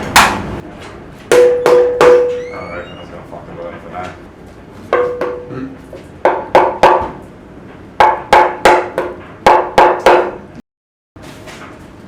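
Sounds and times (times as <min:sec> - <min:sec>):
hammer blows on metal: 0:01.3 - 0:02.5.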